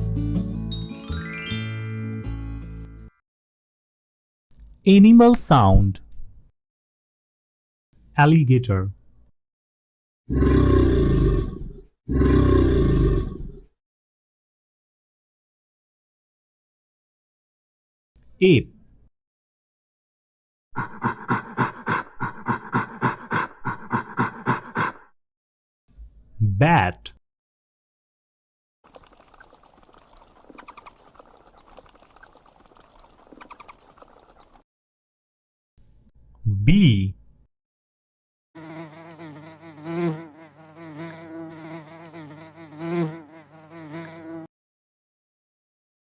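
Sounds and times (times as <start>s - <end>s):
ape panting hoots: 20.8s - 25.1s
bee buzzing: 38.6s - 44.5s.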